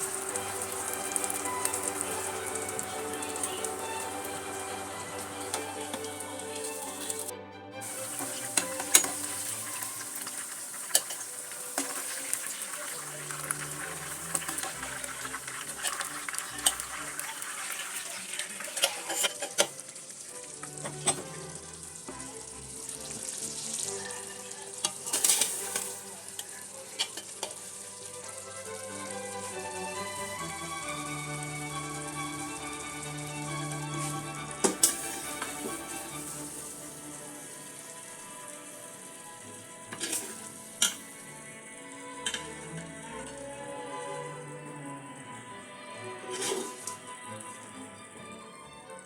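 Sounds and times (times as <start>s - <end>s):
utensil scraping a pan: 0.0s - 19.8s, 24.8s - 27.6s, 39.8s - 41.2s, 42.2s - 42.6s, 46.2s - 47.0s
food sizzling in a pan: 0.0s - 48.4s
soft background music: 0.0s - 49.0s.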